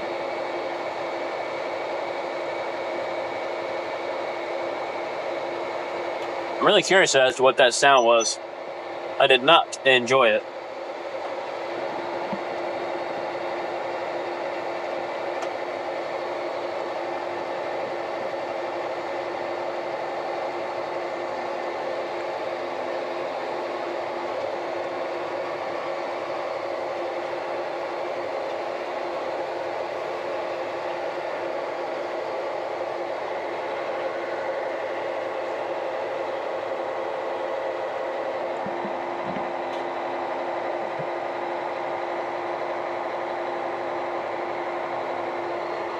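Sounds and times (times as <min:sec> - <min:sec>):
steady drivetrain whine: 0:00.0 - 0:45.9
tractor engine droning: 0:06.2 - 0:10.4.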